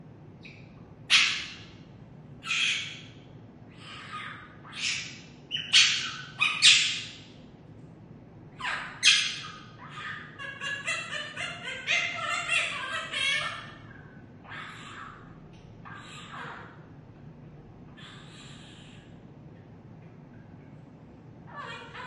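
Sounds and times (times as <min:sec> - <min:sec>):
parrot screeching: 0:01.1 - 0:01.8, 0:02.4 - 0:07.2, 0:08.6 - 0:16.9, 0:17.9 - 0:19.2, 0:21.5 - 0:22.0.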